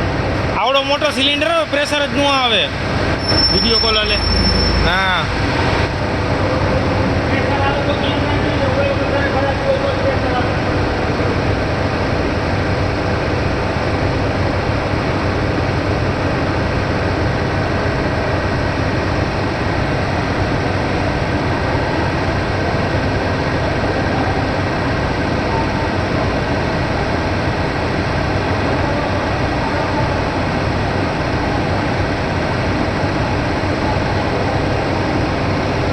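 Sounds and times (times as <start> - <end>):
machinery rumbling: 0.0 - 14.0.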